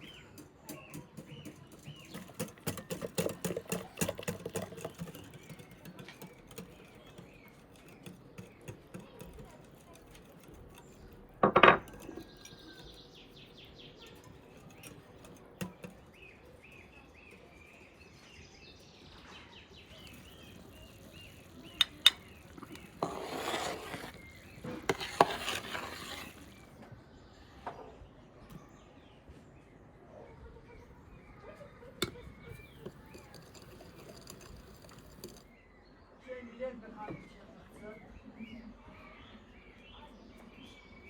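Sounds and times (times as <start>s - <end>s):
cookware clanking: 0.0s - 18.4s, 19.8s - 26.7s, 32.0s - 35.4s
utensils scraping: 0.0s - 19.0s, 19.7s - 26.8s, 32.0s - 35.5s.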